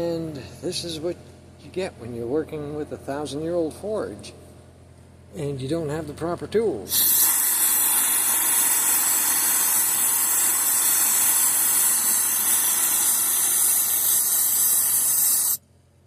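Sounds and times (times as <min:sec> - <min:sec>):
loud hiss of rushing air: 0:06.9 - 0:15.6.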